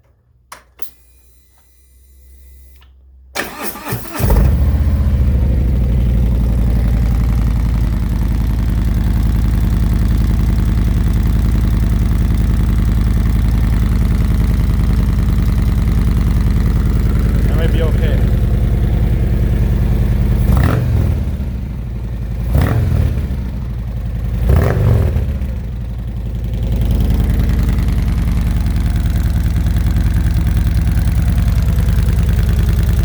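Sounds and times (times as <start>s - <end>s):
motorcycle engine starter cranking: 3.4s - 5.0s
motorcycle engine loud idle: 4.3s - 33.0s.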